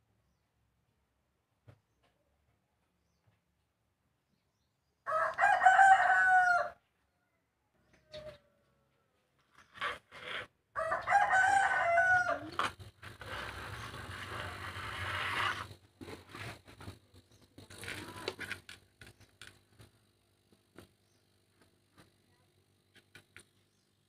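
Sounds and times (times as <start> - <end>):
rooster crowing: 5.1 - 8.9, 10.8 - 12.6
hissing noise: 12.5 - 18.6.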